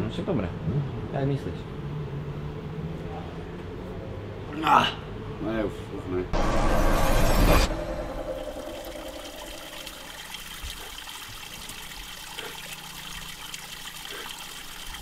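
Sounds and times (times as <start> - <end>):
liquid trickling into glass: 8.2 - 15.0.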